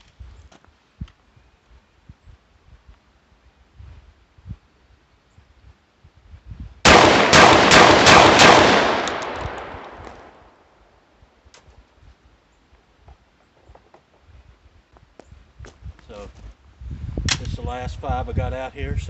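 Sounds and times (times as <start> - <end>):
shotgun shots with echo: 6.8 - 10.4.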